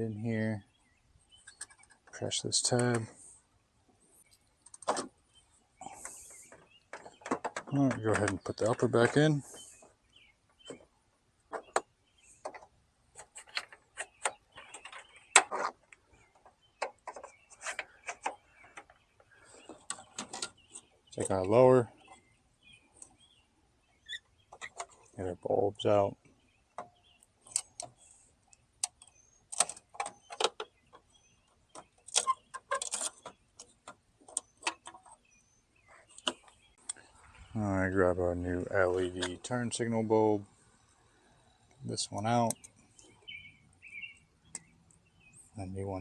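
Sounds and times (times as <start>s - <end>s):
plastic parts clicking and knocking: 4.6s - 5.2s, 5.8s - 10.9s, 11.5s - 21.6s, 28.8s - 35.2s.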